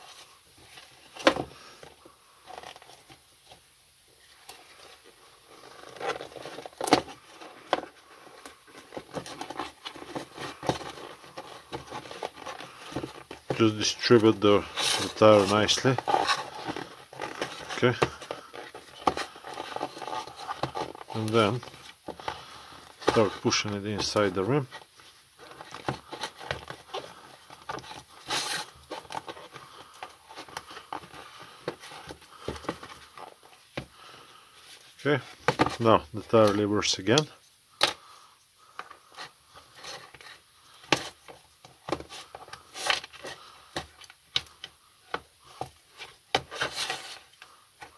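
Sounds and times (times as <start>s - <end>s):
tyre scraping: 4.4s - 34.1s, 45.1s - 47.9s
tyre clicking and rubbing on rim: 5.5s - 33.9s.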